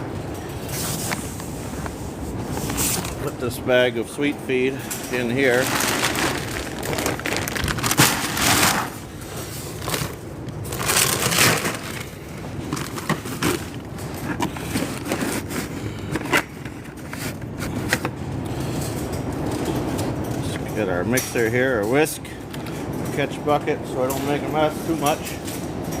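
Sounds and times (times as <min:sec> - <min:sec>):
paper bag crinkling: 0:05.0 - 0:16.5.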